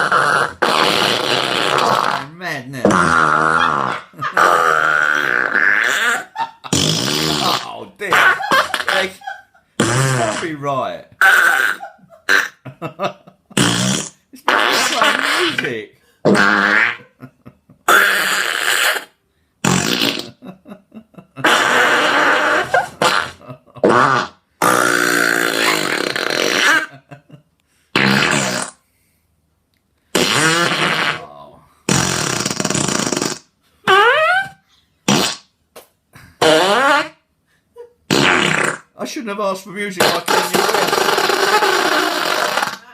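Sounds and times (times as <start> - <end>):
fart noises from speaker: 0.0 - 9.2, 9.8 - 10.6, 13.5 - 17.2, 17.9 - 20.4, 21.4 - 27.0, 28.0 - 28.8, 30.1 - 35.5, 36.4 - 37.3, 38.1 - 39.0, 40.0 - 42.9.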